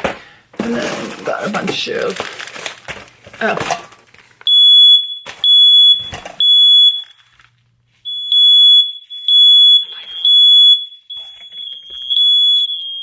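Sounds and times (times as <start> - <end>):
smoke alarm beeping: 4.5 - 7.3, 8.0 - 13.0.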